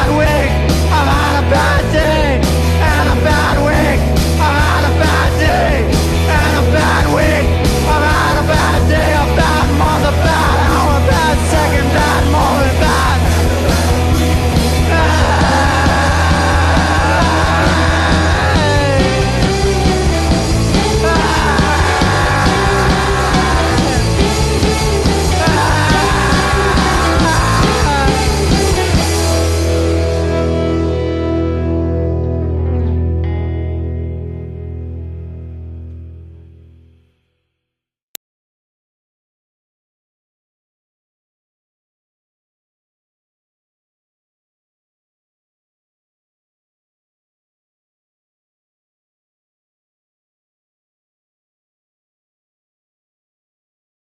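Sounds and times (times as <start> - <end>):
garage rock band playing: 0.0 - 36.3
bending lead guitar line: 0.0 - 36.6.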